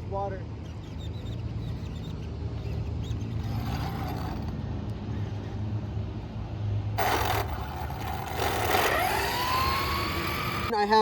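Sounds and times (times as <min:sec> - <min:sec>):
electric motor whining: 0:07.0 - 0:10.7.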